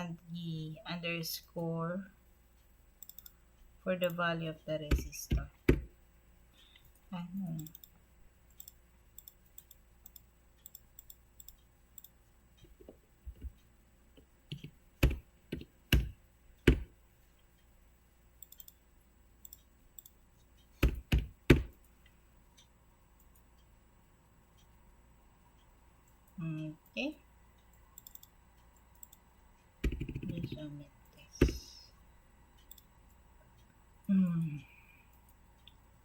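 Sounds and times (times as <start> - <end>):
mouse and keyboard clicks: 14.2 - 16.9, 28.0 - 29.2, 29.8 - 31.8.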